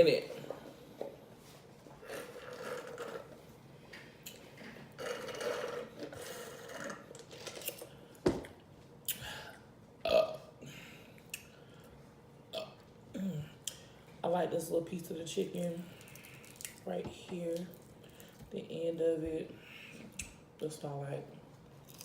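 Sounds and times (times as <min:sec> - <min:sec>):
woman burping: 0:10.0 - 0:10.5, 0:12.5 - 0:13.6.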